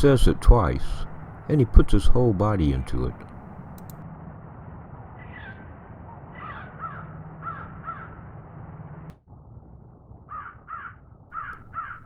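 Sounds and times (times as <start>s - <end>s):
steady low hum: 0.0s - 4.0s
sharp click: 2.9s - 4.0s
crow calling: 6.4s - 8.2s, 10.3s - 12.0s.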